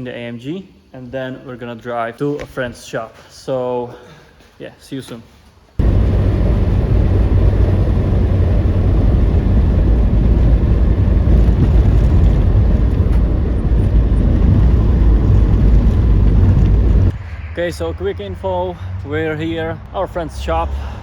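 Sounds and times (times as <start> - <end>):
car engine and road noise: 5.8 - 21.0.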